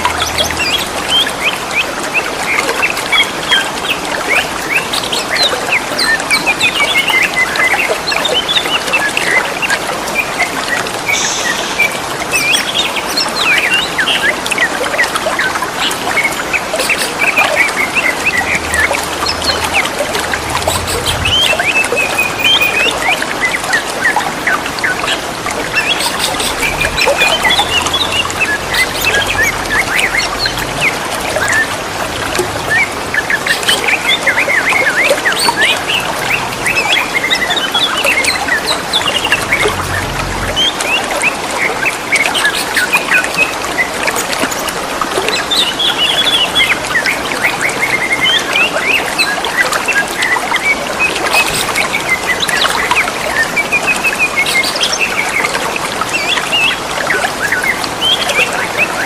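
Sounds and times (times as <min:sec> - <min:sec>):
water trickling: 0:00.0 - 0:59.0
birds chirping and whistling: 0:10.2 - 0:14.6, 0:15.4 - 0:31.8.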